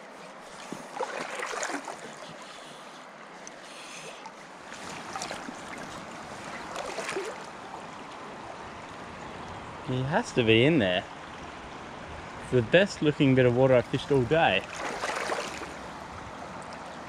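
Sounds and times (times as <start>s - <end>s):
creek water running: 0.0s - 17.0s
water splashing: 0.5s - 2.9s, 3.5s - 9.4s, 13.9s - 16.9s.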